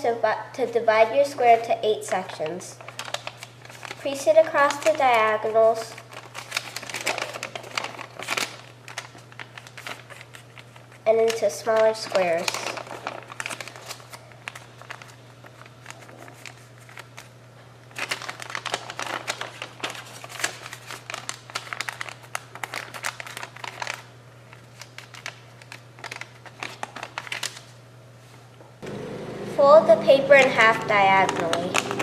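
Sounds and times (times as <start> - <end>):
paper crinkling and rustling: 2.4 - 17.3, 17.9 - 27.8, 30.3 - 32.0
steady low hum: 27.8 - 32.0.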